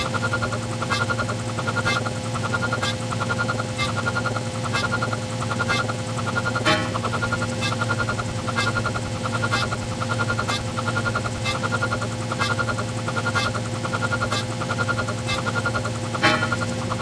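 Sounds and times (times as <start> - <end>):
low hum: 6.6 - 7.9, 16.0 - 17.0
steady electronic tone: 6.6 - 7.9, 16.1 - 17.0
rapid high electronic beeps: 13.3 - 17.0.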